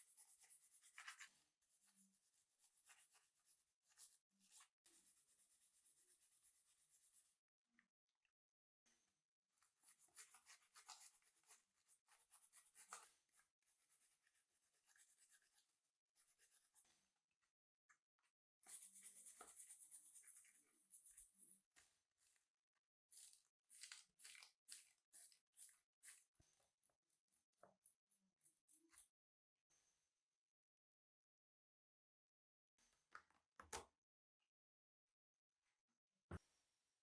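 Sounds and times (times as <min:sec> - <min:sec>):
scratchy rubbing strokes: 0:18.7 - 0:22.3.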